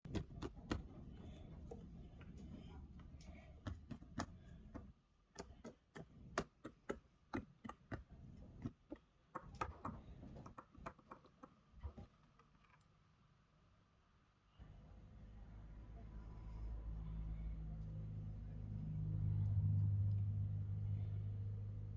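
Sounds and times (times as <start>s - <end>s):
low rumble: 15.1s - 21.9s.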